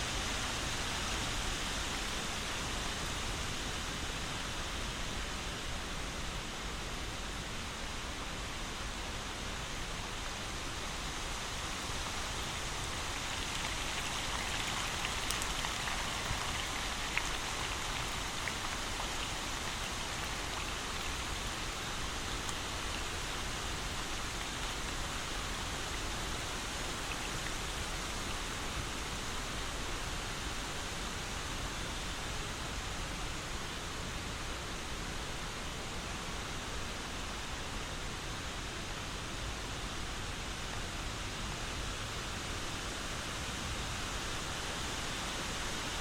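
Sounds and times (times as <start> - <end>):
steady rain falling: 0.0 - 46.0.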